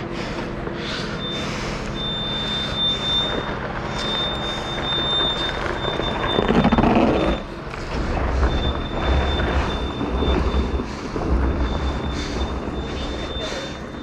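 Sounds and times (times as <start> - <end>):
car engine running: 0.0 - 14.0
high electronic tone: 1.1 - 7.6.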